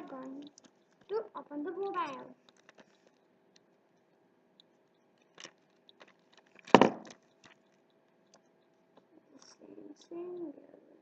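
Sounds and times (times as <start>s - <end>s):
plastic clicks and scrapes: 1.8s - 3.7s.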